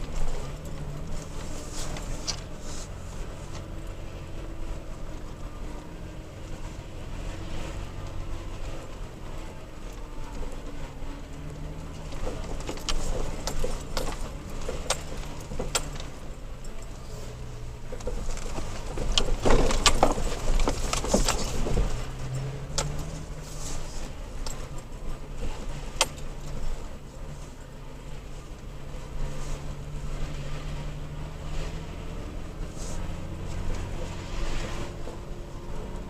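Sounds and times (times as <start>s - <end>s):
truck engine drone: 0.0s - 36.0s
loose gear rattling: 11.9s - 16.7s, 17.9s - 24.8s.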